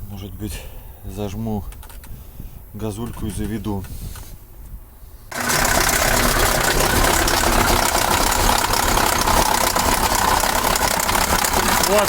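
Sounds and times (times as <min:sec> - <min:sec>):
diesel engine starting and running: 0:05.3 - 0:12.0
engine knocking chatter: 0:05.3 - 0:12.0.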